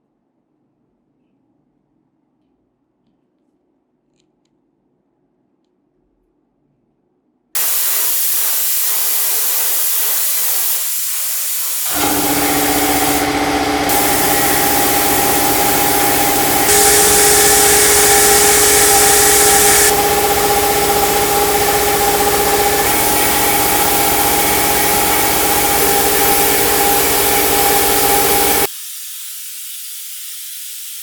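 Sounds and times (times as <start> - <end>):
spray-like hiss: 7.6 - 31.0
small electric motor tool whining: 11.8 - 28.7.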